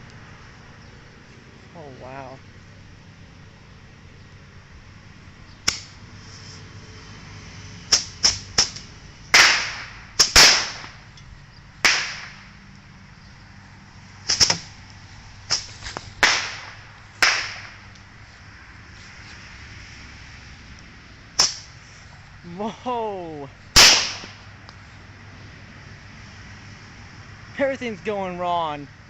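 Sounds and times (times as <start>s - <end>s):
firework rockets whooshing and cracking: 8.0s - 11.0s, 11.8s - 12.5s, 15.5s - 17.9s, 23.7s - 24.4s.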